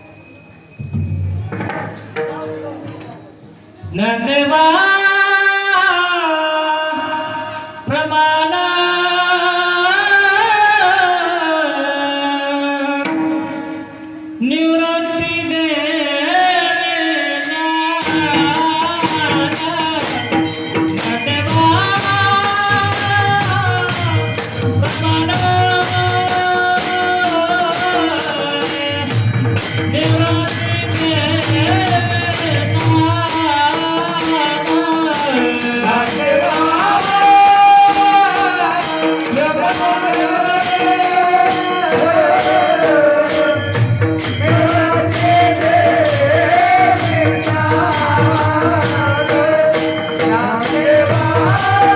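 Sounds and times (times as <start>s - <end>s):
hand cymbals: 0.0s - 3.0s, 16.4s - 51.9s
man singing devotional song: 3.8s - 51.9s
hand drum: 18.0s - 51.9s.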